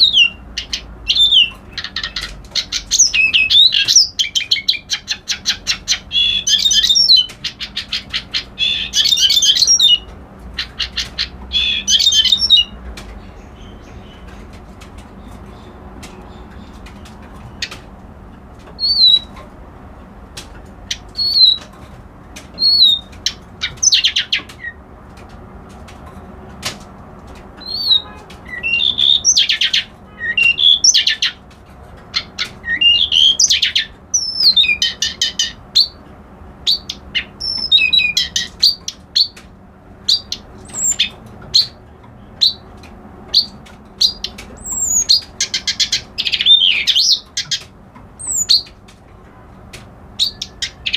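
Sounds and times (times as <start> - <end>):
reed warbler singing: 0.0 - 14.4, 18.8 - 19.4, 20.9 - 21.7, 22.6 - 24.8, 27.6 - 31.4, 32.0 - 36.0, 36.6 - 39.4, 40.0 - 42.7, 43.3 - 48.8, 50.2 - 50.9.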